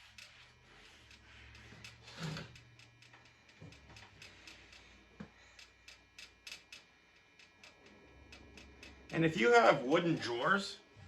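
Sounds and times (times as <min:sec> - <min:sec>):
steady quick ticking: 0:02.6 - 0:09.8.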